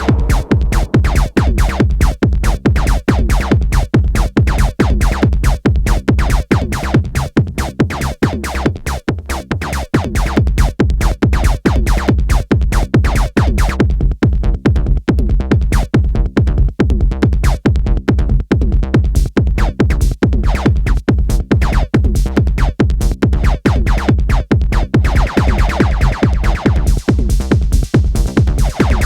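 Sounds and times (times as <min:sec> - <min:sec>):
techno electronic music: 0:00.0 - 0:12.4, 0:21.6 - 0:21.9, 0:23.4 - 0:29.0
bass line: 0:00.0 - 0:29.0
kick drum beat: 0:00.0 - 0:29.0.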